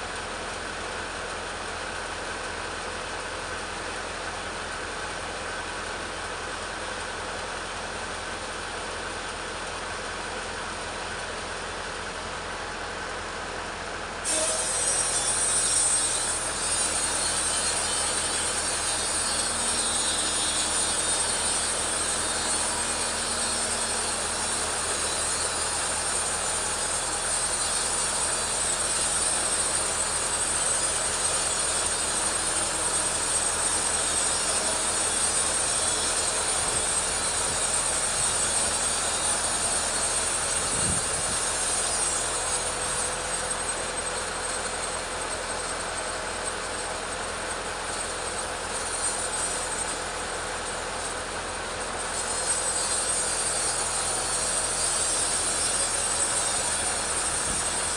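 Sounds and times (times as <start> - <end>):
chainsaw cutting through log: 14.3 - 45.3, 45.9 - 57.9.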